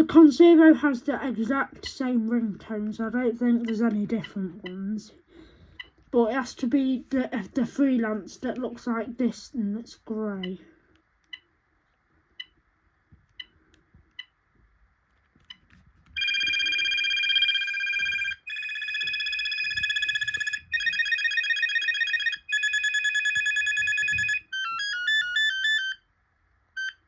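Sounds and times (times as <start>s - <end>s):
electronic ringtones: 16.2s - 26.0s, 26.8s - 27.0s
short phone beeps: 16.2s - 26.0s, 26.8s - 27.0s.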